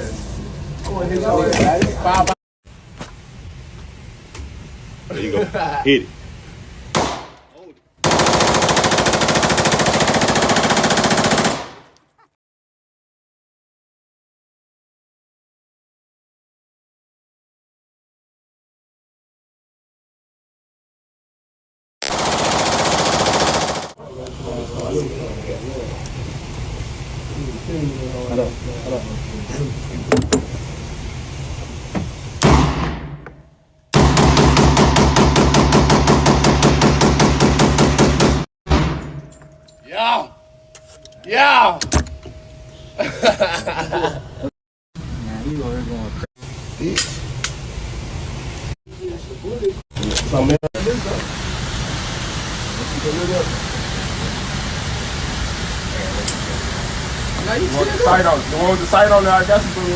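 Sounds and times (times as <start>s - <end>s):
gunshot bang: 6.9s - 7.4s, 32.4s - 33.3s, 38.2s - 39.3s
automatic gunfire burst: 8.0s - 11.9s, 22.0s - 24.0s, 34.0s - 38.1s.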